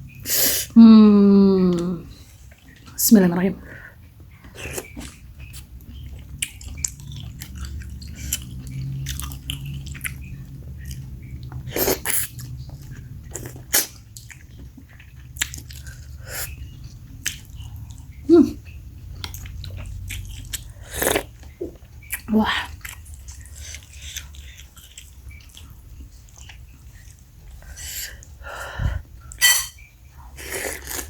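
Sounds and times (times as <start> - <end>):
chewing and mouth sounds: 4.1 - 28.4.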